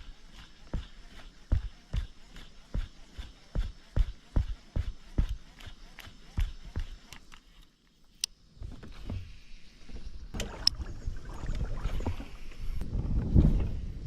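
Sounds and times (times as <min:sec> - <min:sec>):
wind: 0:00.0 - 0:14.0
rumble of water: 0:10.3 - 0:14.0.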